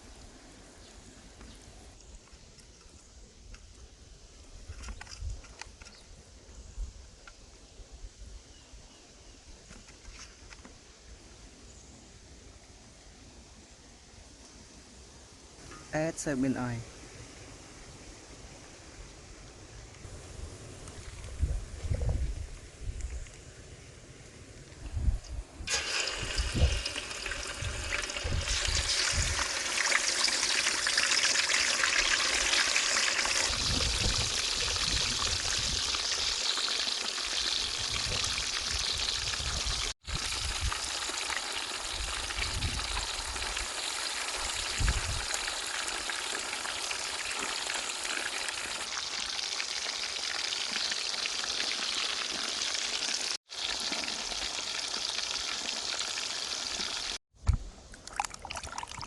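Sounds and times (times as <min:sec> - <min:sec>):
oil popping and spattering: 0:25.7 - 0:41.2, 0:58.0 - 0:59.0
fish sizzling in hot oil: 0:25.7 - 0:57.2.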